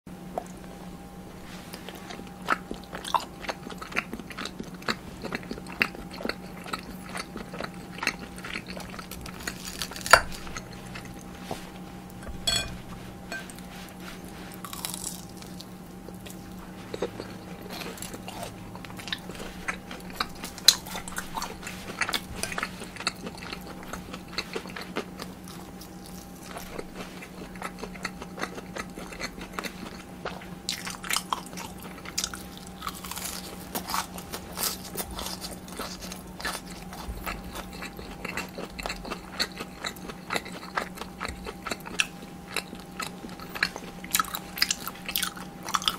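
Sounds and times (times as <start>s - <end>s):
faint steady hum: 0.1s - 45.9s
crunchy bites and chewing: 1.8s - 12.5s, 14.5s - 45.9s.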